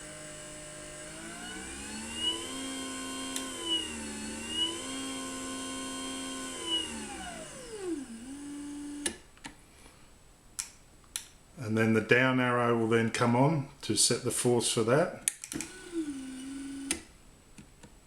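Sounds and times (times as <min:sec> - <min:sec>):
garage door opener motor whine: 0:00.0 - 0:09.2, 0:15.5 - 0:17.1.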